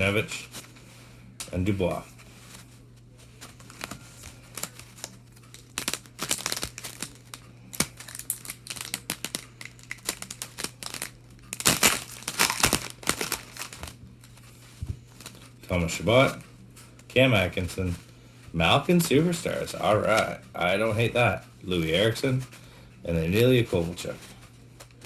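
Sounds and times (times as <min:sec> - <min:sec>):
cards being handled: 0:00.4 - 0:18.1, 0:19.0 - 0:21.6
foil wrapper crinkling and tearing: 0:03.5 - 0:14.0.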